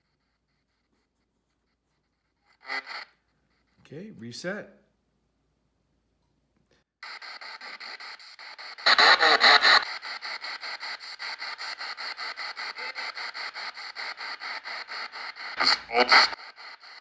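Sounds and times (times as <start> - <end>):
pulsing radio static: 2.6 - 3.1, 7.0 - 17.0.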